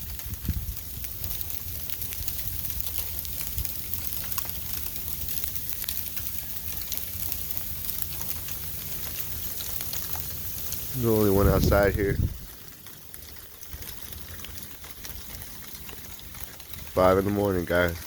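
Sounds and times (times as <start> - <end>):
wind rumbling on microphone: 0.0 - 3.8, 10.9 - 12.6
steady snowstorm hiss: 0.0 - 18.0
ticks of falling precipitation: 0.0 - 18.0.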